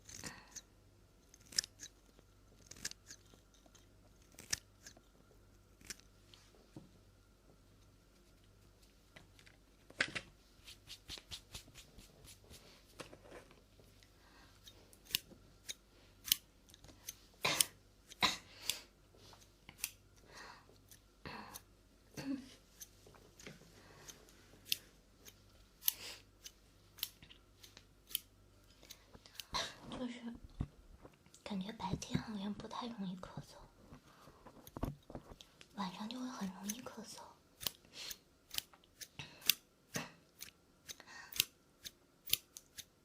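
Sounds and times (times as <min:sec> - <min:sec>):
scissors snipping: 0:00.0 - 0:05.1, 0:05.7 - 0:06.1, 0:14.6 - 0:18.8, 0:19.4 - 0:20.0, 0:22.8 - 0:29.6, 0:36.1 - 0:42.9.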